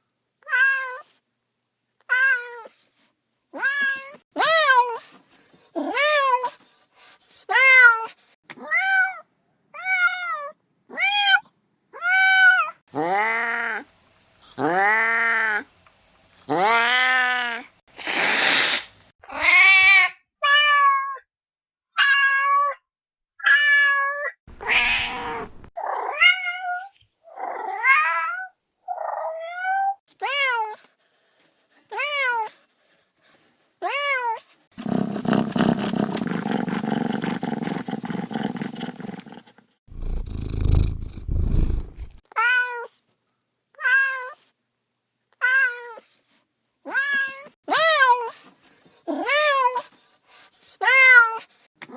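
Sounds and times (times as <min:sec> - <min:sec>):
kittens meowing: 0:24.5 - 0:26.6
low rumble: 0:41.2 - 0:42.2.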